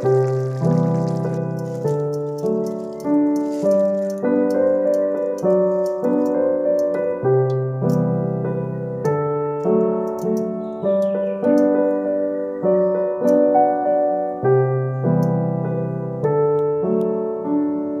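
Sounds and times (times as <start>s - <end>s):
piano chords and melody: 0.0s - 18.0s.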